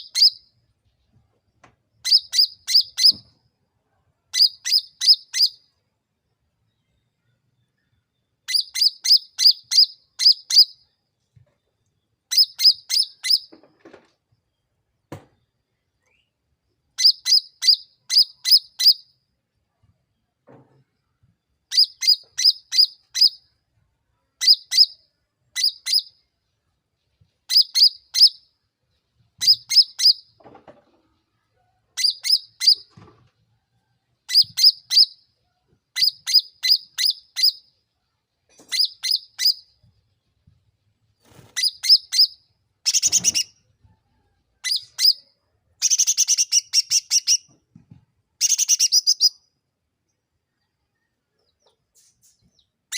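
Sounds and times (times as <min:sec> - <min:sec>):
bird singing sharp high chirps: 0:00.0 - 0:00.5, 0:02.0 - 0:03.3, 0:04.4 - 0:05.7, 0:08.4 - 0:10.8, 0:12.3 - 0:13.5, 0:17.0 - 0:19.1, 0:21.7 - 0:23.5, 0:24.4 - 0:25.0, 0:25.6 - 0:26.2, 0:27.5 - 0:28.5, 0:29.4 - 0:30.3, 0:32.0 - 0:32.9, 0:34.3 - 0:35.3, 0:36.0 - 0:37.7, 0:38.7 - 0:39.8, 0:41.3 - 0:43.6, 0:44.6 - 0:47.5, 0:48.4 - 0:49.5.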